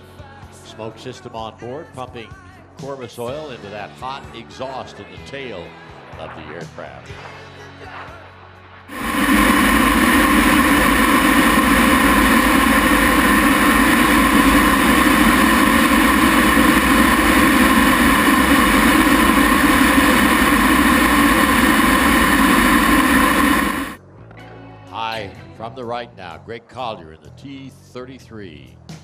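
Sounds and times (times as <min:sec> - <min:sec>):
jet engine roaring: 0:08.9 - 0:24.0.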